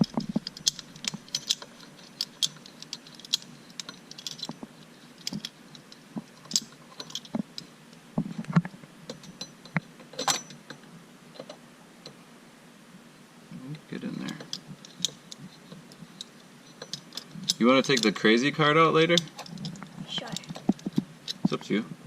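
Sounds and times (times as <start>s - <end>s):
clinks of small hardware and tools: 0.0s - 7.7s, 9.1s - 10.8s, 14.2s - 18.4s.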